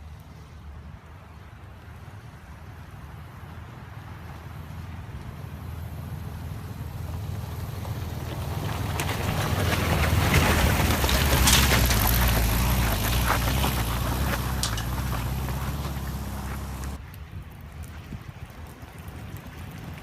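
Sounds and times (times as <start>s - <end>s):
van engine running: 4.3s - 17.0s
rattles over rough ground: 6.6s - 17.0s.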